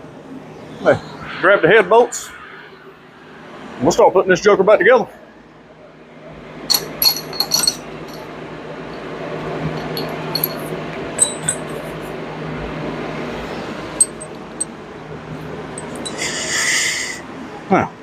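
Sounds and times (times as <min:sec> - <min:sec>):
metal bolts clinking: 0:06.7 - 0:08.2, 0:09.7 - 0:11.9, 0:14.0 - 0:14.7, 0:15.8 - 0:16.3.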